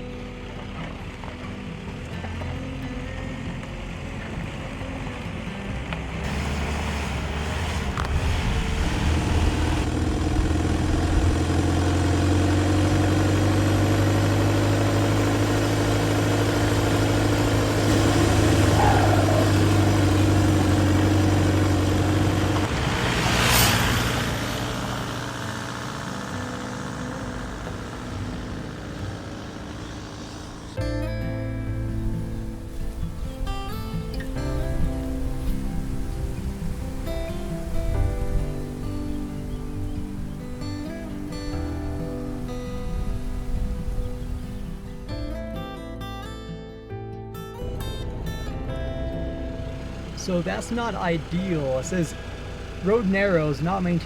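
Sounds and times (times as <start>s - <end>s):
van engine running: 0.0s - 46.6s, 47.3s - 54.0s
rushing whoosh: 22.3s - 25.1s.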